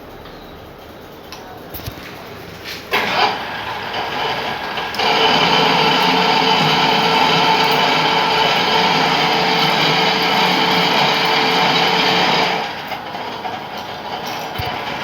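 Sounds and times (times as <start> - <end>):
lathe running with whine: 2.4 - 15.0.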